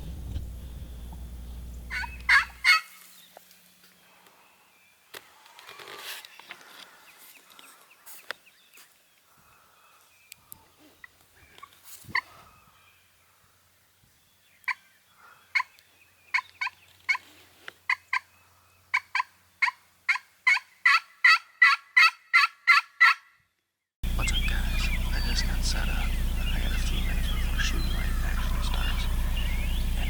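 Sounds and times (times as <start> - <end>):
turkey yelping: 1.9 - 3.0, 18.9 - 23.2, 26.0 - 30.0.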